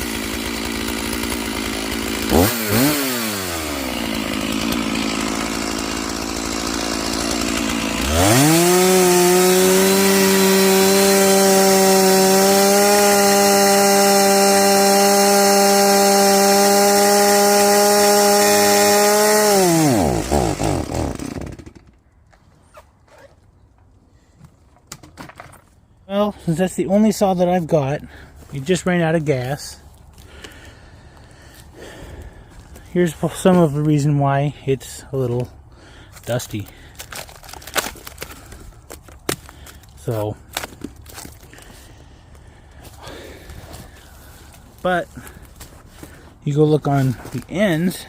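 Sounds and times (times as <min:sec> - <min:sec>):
chainsaw revving and sputtering: 0:00.0 - 0:22.0, 0:36.2 - 0:48.0.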